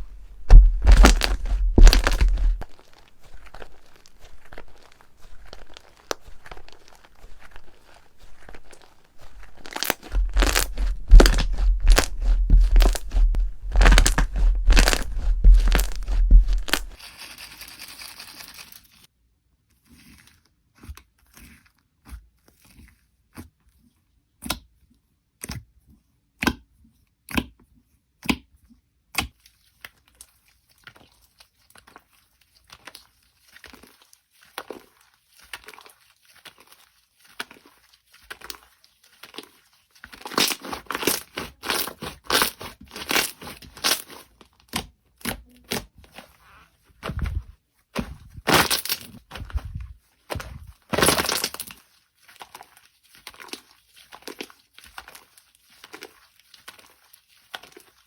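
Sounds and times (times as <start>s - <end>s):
slime hissing and popping: 0.5s - 7.6s, 8.4s - 17.0s.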